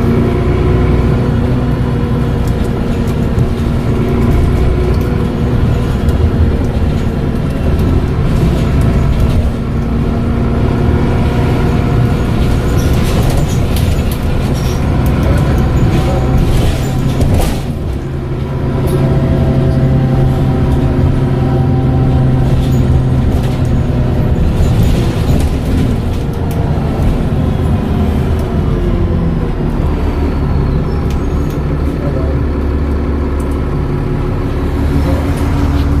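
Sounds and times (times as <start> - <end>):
bus diesel engine running: 0.0 - 36.0.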